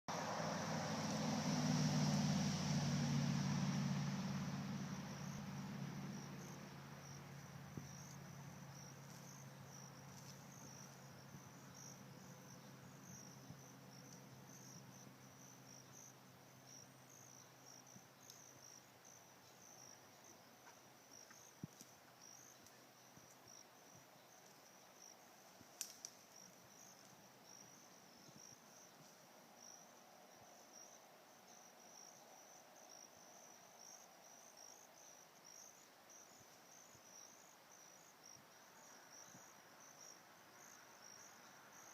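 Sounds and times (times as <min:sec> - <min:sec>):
crickets chirping: 0:00.1 - 0:41.9
faint clicks: 0:25.8 - 0:26.2.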